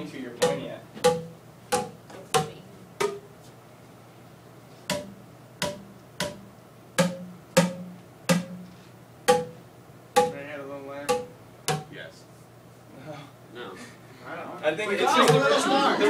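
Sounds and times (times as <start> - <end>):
tuned percussion notes: 0.4 - 3.3, 4.9 - 9.6, 10.2 - 10.5, 11.1 - 12.0.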